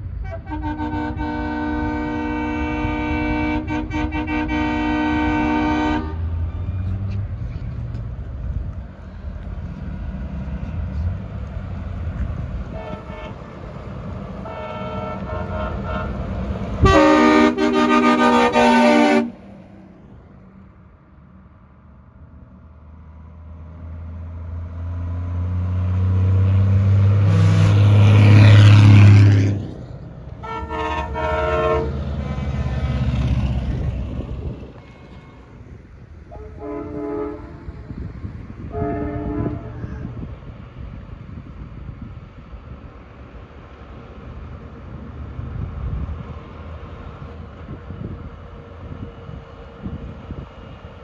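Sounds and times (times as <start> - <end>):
truck engine drone: 0.0 - 51.0
truck air horn blasts: 0.1 - 6.4, 12.7 - 13.6, 14.4 - 19.5, 27.2 - 29.6, 30.4 - 32.8, 34.7 - 35.7, 36.3 - 37.9, 38.6 - 40.2.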